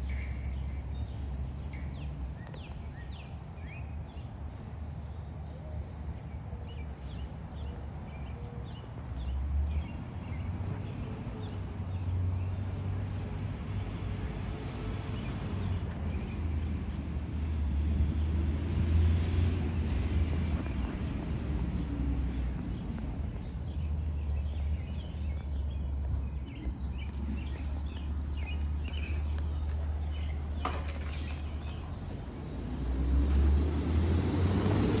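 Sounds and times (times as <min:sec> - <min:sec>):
low outdoor rumble: 0:06.8 - 0:35.0
motor vehicle passing: 0:09.2 - 0:35.0.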